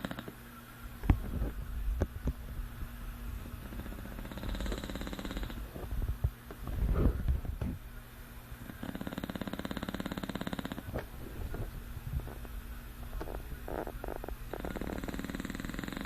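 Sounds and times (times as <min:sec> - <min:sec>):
dog snoring: 0:00.0 - 0:00.4, 0:03.6 - 0:05.8, 0:08.6 - 0:11.6, 0:13.1 - 0:16.0
low breathy sound: 0:03.7 - 0:07.6.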